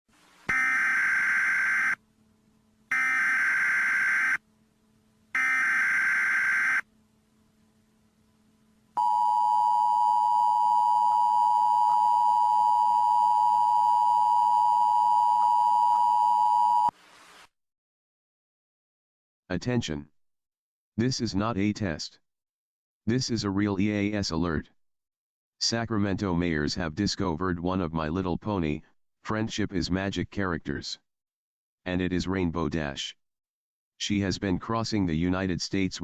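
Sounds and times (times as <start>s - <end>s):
digital data bursts: 0.5s - 2.0s, 2.9s - 4.4s, 5.4s - 6.8s
two-tone alert signal: 0.5s - 2.0s, 2.9s - 4.4s, 5.4s - 6.8s.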